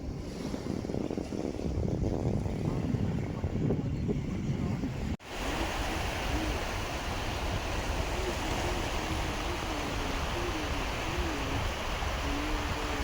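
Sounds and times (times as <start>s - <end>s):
waves washing onto beach: 5.2s - 13.0s.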